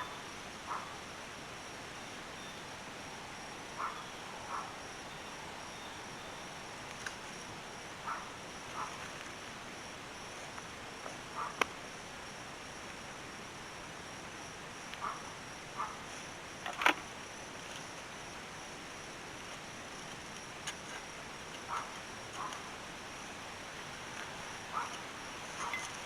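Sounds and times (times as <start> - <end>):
high insect buzz: 0.0 - 10.6
steady hiss: 0.0 - 26.0.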